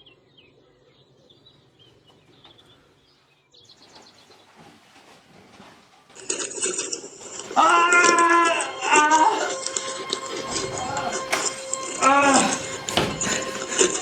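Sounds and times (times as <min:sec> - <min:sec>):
faint knocks: 0:03.8 - 0:14.0.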